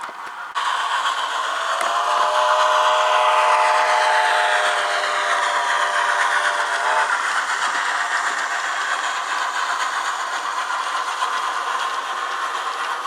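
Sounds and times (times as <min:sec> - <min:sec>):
steady steam hiss: 0:00.3 - 0:13.0
steam whistle: 0:00.6 - 0:07.2.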